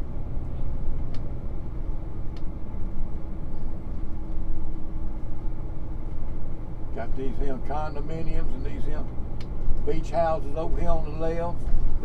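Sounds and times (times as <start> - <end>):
road and engine rumble: 0.0 - 12.0
light ticks: 2.3 - 2.5, 9.4 - 9.9.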